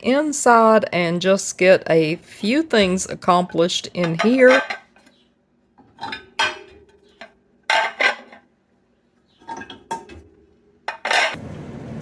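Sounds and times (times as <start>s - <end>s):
dishes and cutlery clinking: 3.4s - 5.1s, 5.8s - 8.5s, 9.3s - 11.4s.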